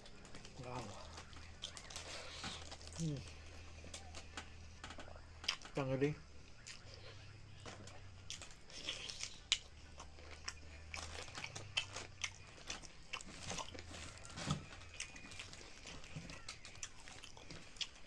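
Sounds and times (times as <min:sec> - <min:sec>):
chewing with wet smacks: 0:00.0 - 0:18.0
crunchy clicks while eating: 0:00.0 - 0:18.0.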